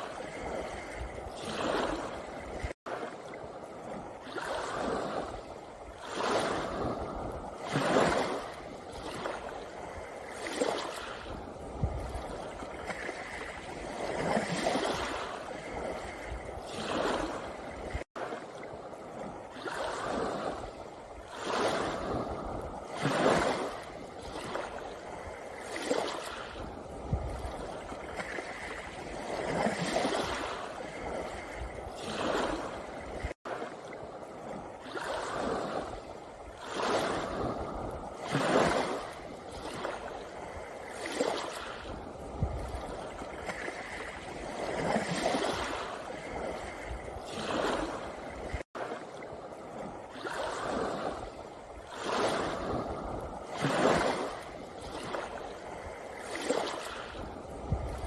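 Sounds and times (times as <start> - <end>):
waves washing on pebbly shore: 0.0 - 58.0.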